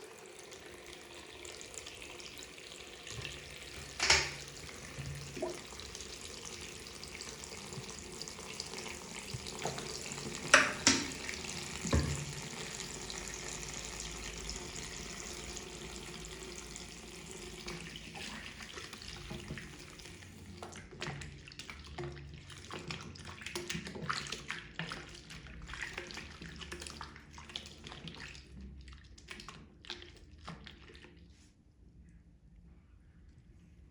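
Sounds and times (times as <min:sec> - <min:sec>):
water running in a sink: 0:00.0 - 0:31.3.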